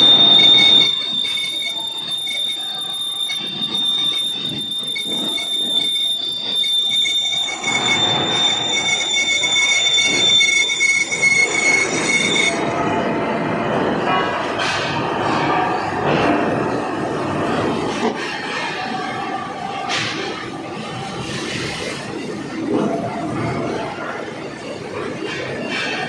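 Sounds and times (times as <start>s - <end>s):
lathe tool squealing on metal: 0.0s - 12.6s.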